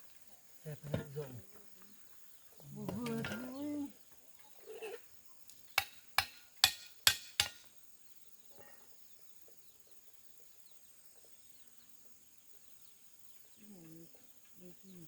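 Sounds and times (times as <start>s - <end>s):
faint bird chirps: 0.0s - 5.8s, 7.9s - 15.0s
hand tool strikes: 5.8s - 7.7s.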